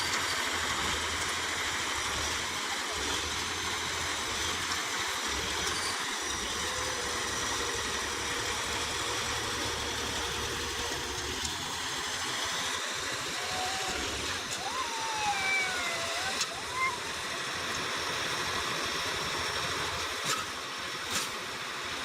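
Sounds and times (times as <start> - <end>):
vehicle engine running: 0.0 - 15.0.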